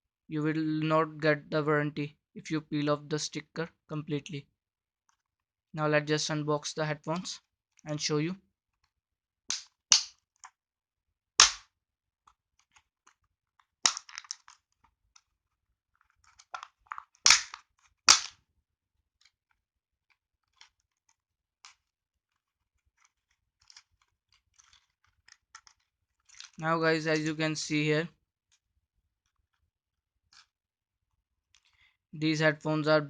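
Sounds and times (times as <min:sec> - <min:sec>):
packaging snapping and crackling: 0:12.6 - 0:15.2, 0:16.0 - 0:18.4, 0:20.4 - 0:26.6.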